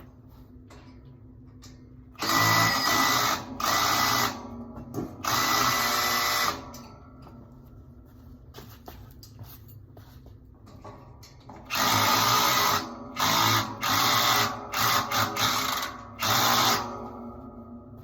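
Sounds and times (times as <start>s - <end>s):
power drill bursts: 2.2s - 4.5s, 5.2s - 6.7s, 11.7s - 17.1s.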